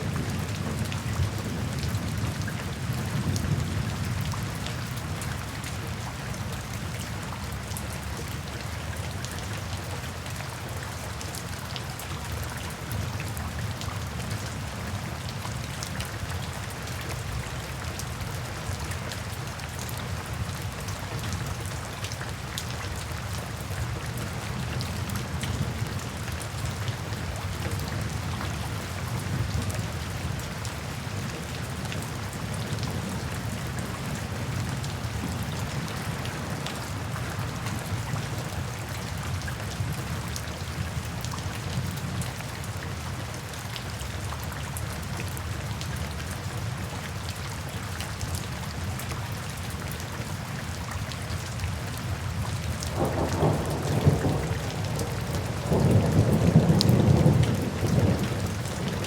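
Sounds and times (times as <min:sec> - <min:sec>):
steady rainfall: 0:00.0 - 0:59.0
thunder rumbling: 0:53.0 - 0:59.0.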